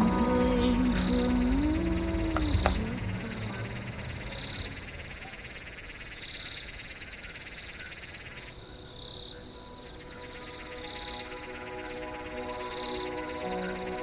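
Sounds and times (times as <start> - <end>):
music: 0.0 - 4.2, 9.6 - 14.0
frogs pulsing chorus: 0.0 - 14.0.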